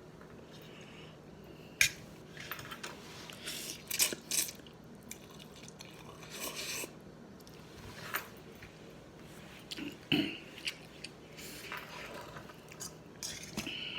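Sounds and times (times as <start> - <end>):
chewing: 3.7 - 7.6.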